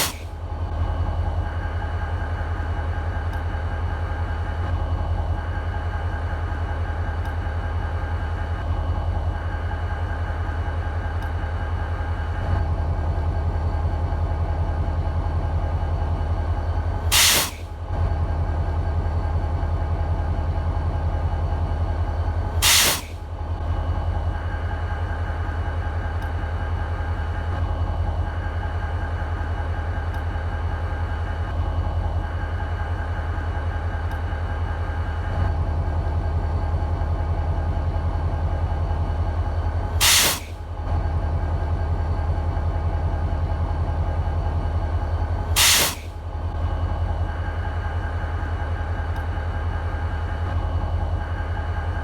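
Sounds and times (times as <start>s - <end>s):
loud air hiss: 0.0s - 0.3s, 17.1s - 17.7s, 22.6s - 23.2s, 40.0s - 40.6s, 45.6s - 46.2s
diesel locomotive idling: 0.0s - 52.0s.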